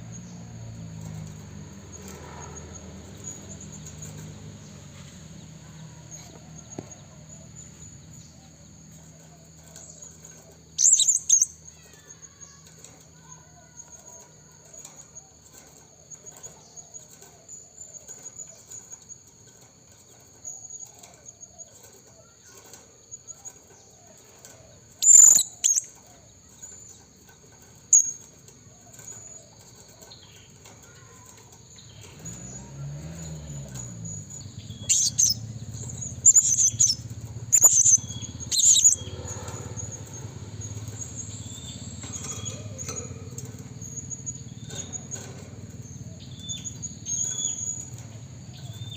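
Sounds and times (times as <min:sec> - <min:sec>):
parrots giving high-pitched calls: 0:10.8 - 0:12.1, 0:25.0 - 0:25.8, 0:34.8 - 0:39.9.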